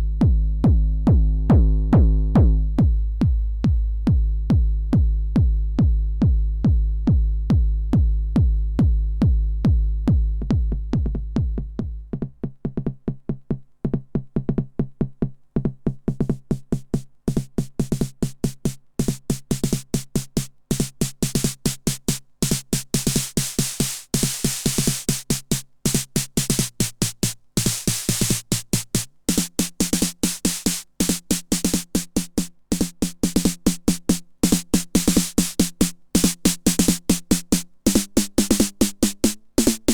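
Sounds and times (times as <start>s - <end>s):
bass drum hits: 0.2s - 5.1s
hi-hats and cymbals: 16.2s - 39.9s
higher-pitched drum hits: 25.9s - 39.9s.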